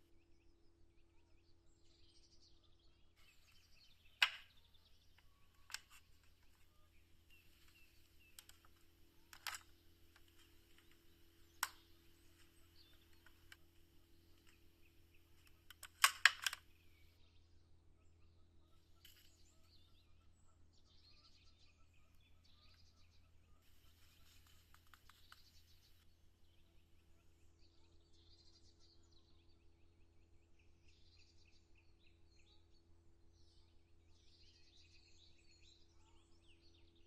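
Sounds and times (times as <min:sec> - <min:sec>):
sharp taps and clicks: 0:04.2 - 0:04.6, 0:07.4 - 0:14.7, 0:15.3 - 0:16.7.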